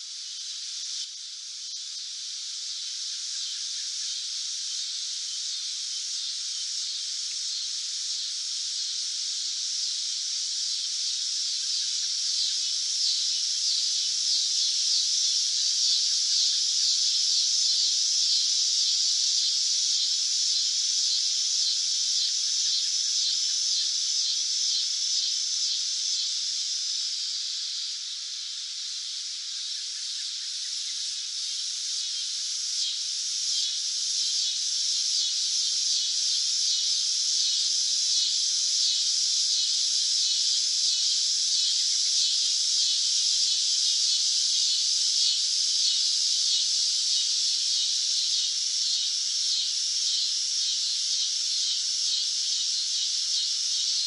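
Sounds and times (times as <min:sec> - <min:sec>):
cicadas buzzing: 0:00.0 - 0:54.0.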